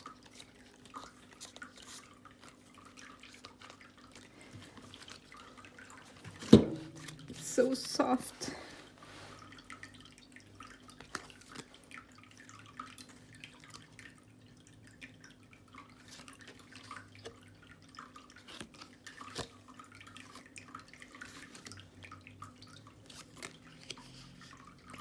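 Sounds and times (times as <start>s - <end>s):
cards being flipped through: 0.2s - 5.4s, 6.3s - 7.7s, 11.0s - 11.7s, 18.5s - 19.6s, 23.0s - 24.6s.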